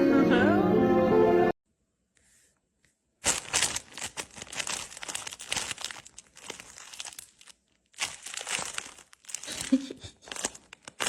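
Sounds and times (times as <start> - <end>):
crumpled material crinkling: 3.2 - 11.0.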